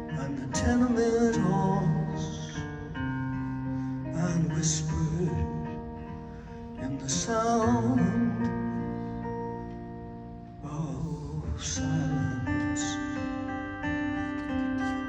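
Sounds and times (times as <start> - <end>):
man singing: 0.0 - 3.0, 4.0 - 8.9, 10.6 - 13.7
acoustic guitar: 0.0 - 15.0.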